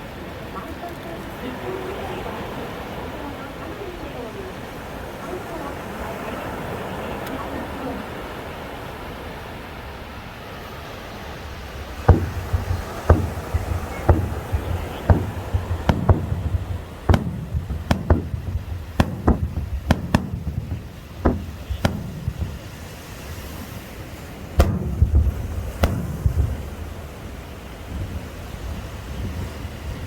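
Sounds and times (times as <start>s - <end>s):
fireworks bursting with rumble: 11.6s - 30.0s.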